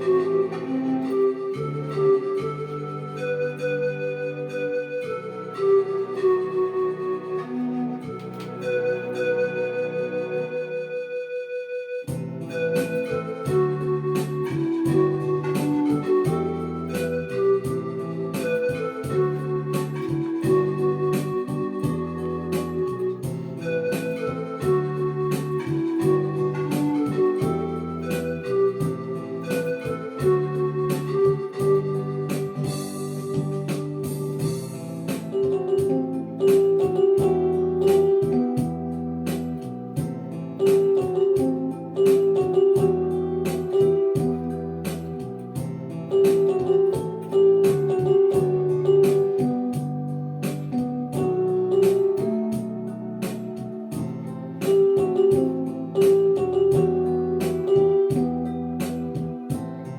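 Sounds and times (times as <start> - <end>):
synthesizer music with beat: 12.1 - 59.9.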